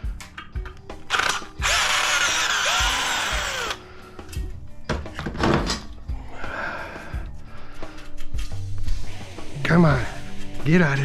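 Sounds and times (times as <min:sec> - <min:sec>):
power drill driving screws: 0:01.1 - 0:03.8.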